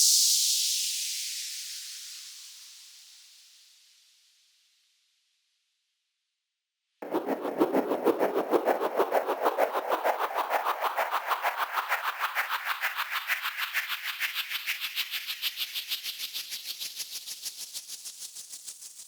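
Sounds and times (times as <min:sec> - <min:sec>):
pulsing synth riser sweep: 0:07.0 - 0:13.0.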